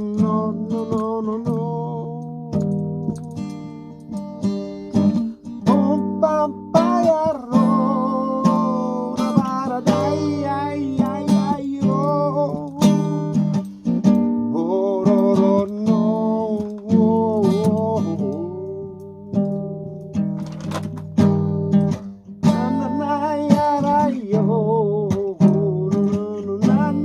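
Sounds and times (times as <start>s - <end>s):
person singing: 0.0s - 3.7s, 5.6s - 13.6s, 14.5s - 19.5s, 22.4s - 27.0s
acoustic guitar strumming: 0.0s - 27.0s.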